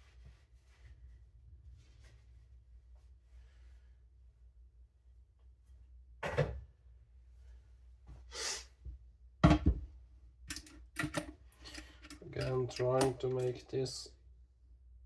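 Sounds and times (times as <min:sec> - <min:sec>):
objects knocking on bench: 0:09.4 - 0:09.9.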